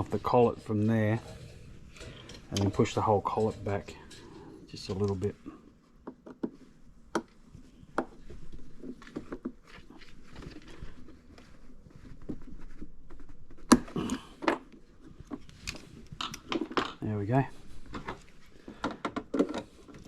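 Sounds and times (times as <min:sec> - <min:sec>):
hand tools clicking on metal: 0:02.0 - 0:05.2.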